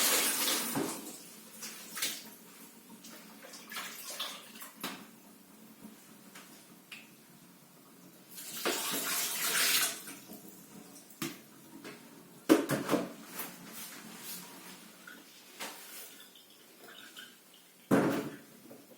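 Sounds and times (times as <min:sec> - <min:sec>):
kitchen tap running: 0:00.0 - 0:01.5, 0:08.2 - 0:11.6.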